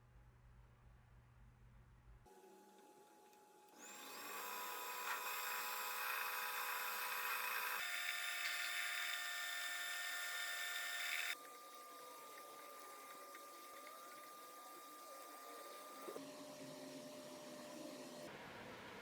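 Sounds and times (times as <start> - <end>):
power tool motor whine: 3.8 - 16.2.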